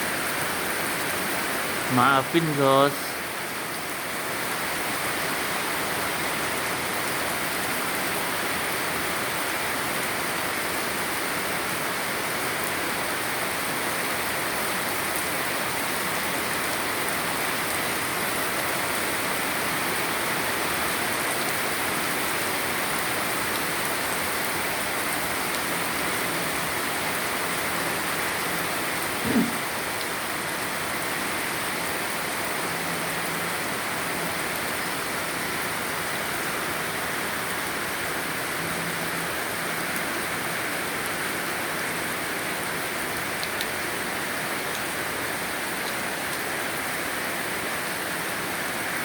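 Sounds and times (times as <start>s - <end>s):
heavy rain falling: 0.0s - 49.0s
brief short sound: 29.2s - 29.7s.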